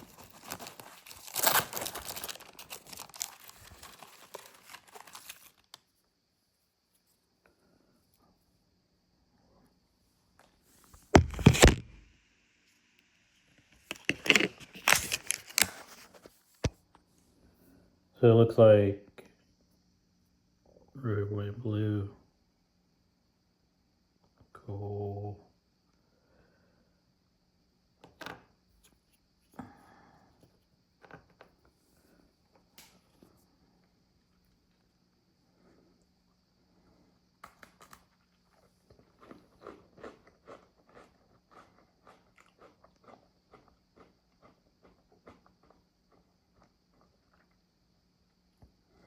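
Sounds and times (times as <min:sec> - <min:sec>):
packaging clicks: 0:00.0 - 0:05.8, 0:13.9 - 0:16.1
packaging crinkling and rustling: 0:00.0 - 0:05.8, 0:11.0 - 0:12.0, 0:13.8 - 0:16.3.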